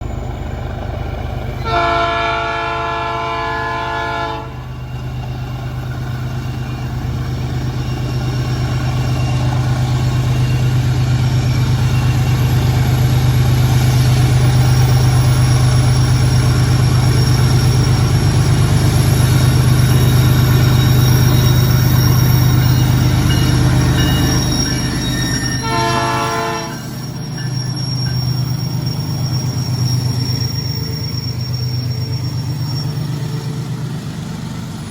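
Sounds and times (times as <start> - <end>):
locomotive engine rumble: 0.0 - 34.9
train horn blasts: 1.6 - 4.6, 25.6 - 26.9.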